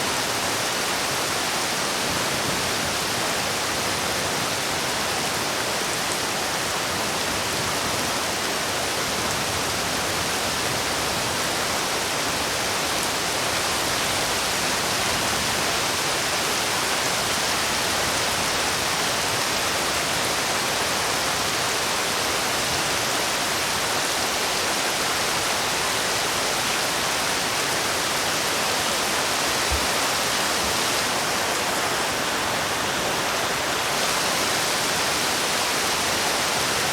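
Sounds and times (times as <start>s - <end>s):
heavy rain hissing: 10.5s - 36.9s.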